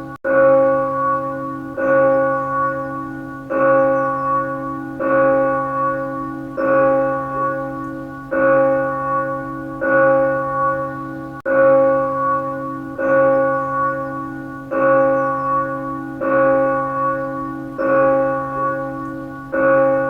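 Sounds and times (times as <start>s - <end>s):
church bell tolling: 0.0s - 20.0s.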